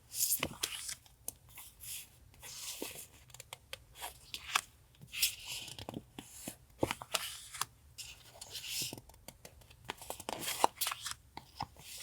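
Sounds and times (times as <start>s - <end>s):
paper rustling and shuffling: 9.8s - 12.0s.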